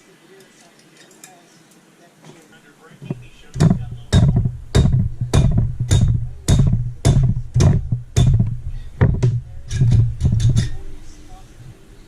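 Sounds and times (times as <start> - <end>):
hammer blows on metal: 3.1 - 10.9.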